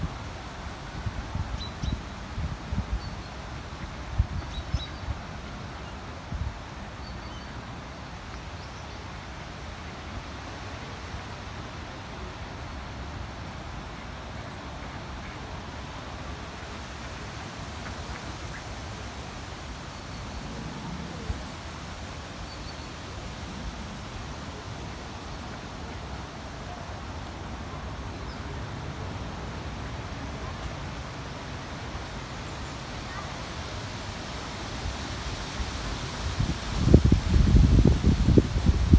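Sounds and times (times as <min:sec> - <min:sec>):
wind rumbling over microphone: 0:35.7 - 0:38.9.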